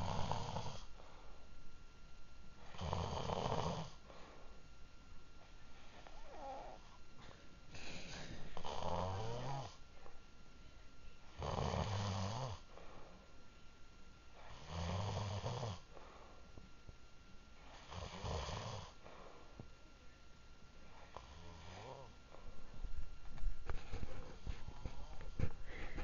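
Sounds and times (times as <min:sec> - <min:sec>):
man snoring: 0:00.0 - 0:00.9, 0:02.6 - 0:04.0, 0:08.6 - 0:09.8, 0:11.3 - 0:12.7, 0:14.4 - 0:15.9, 0:17.7 - 0:19.0, 0:21.1 - 0:22.2
quiet breaths: 0:00.0 - 0:26.0.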